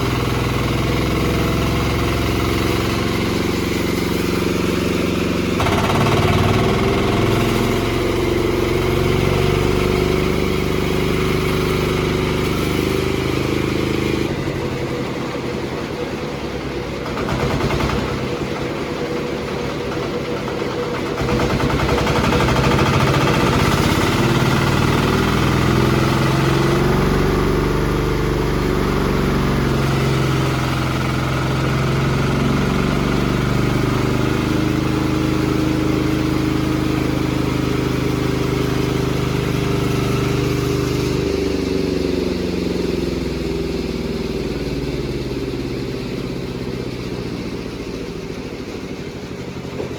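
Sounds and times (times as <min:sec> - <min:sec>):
band sawmill machine hum: 0:00.0 - 0:49.9.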